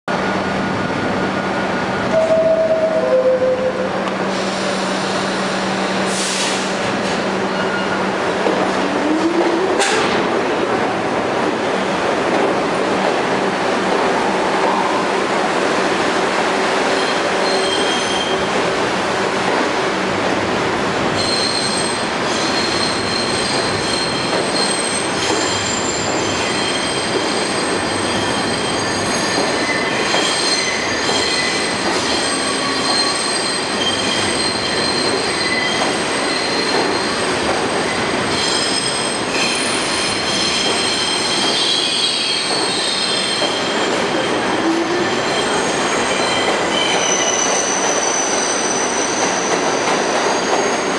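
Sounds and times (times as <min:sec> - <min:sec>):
subway train wheels rumbling: 0:00.1 - 0:50.9
high-pitched wheel squeal: 0:17.0 - 0:18.5, 0:21.2 - 0:37.3, 0:37.9 - 0:43.8.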